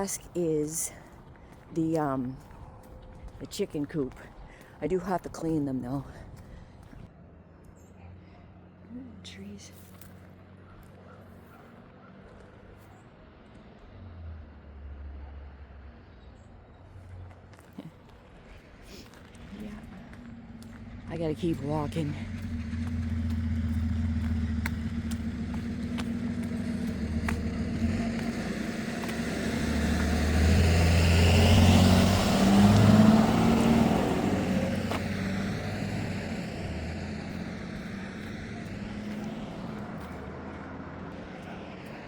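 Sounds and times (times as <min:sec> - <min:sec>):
vehicle driving past: 0:09.9 - 0:17.4, 0:19.4 - 0:42.0.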